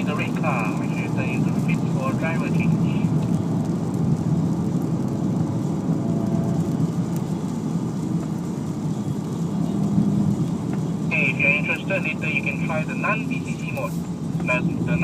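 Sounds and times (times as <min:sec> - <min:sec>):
car engine drone: 0:00.0 - 0:15.0
tyre and road rumble: 0:00.0 - 0:15.0.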